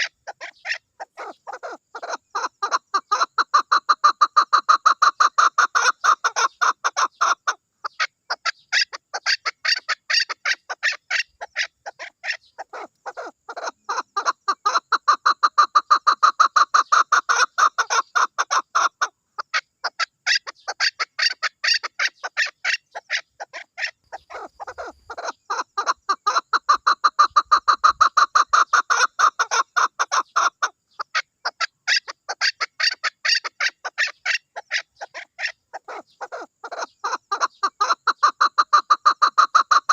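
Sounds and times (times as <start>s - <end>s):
partridge clucking calls: 0.0s - 39.9s.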